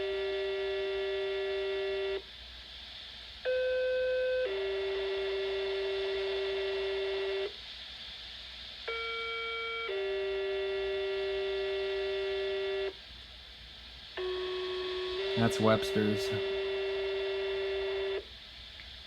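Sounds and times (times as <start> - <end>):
radio hiss: 4.5 - 18.6.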